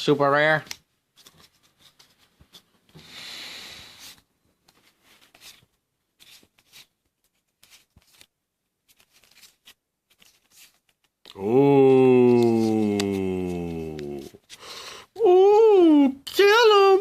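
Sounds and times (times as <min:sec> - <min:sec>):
cards flicking and sliding: 0:05.2 - 0:08.3, 0:12.3 - 0:14.6.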